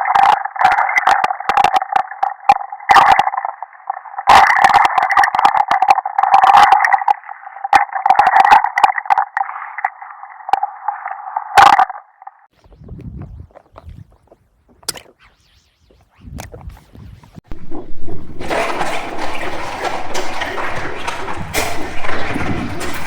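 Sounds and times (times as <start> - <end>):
buzzing warbling tone: 11.6 - 23.0.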